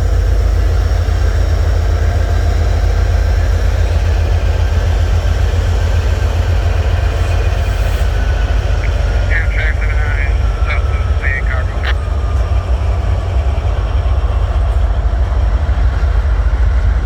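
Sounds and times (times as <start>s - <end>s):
train rumbling: 0.0s - 17.0s.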